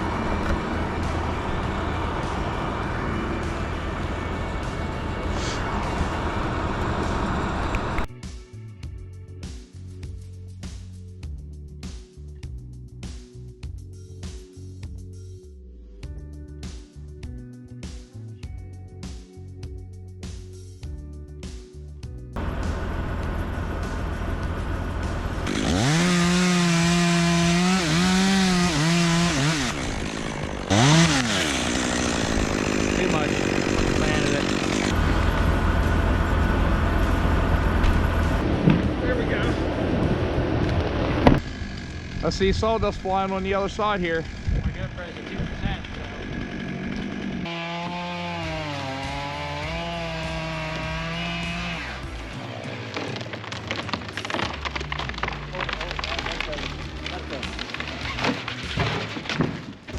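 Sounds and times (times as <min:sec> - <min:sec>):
chainsaw idling and revving: 0:00.0 - 0:08.0, 0:22.4 - 0:38.4, 0:41.4 - 0:52.4.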